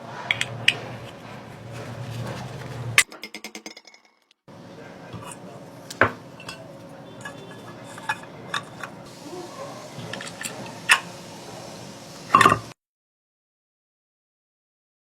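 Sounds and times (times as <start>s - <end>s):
small hard parts clinking: 5.2s - 9.1s.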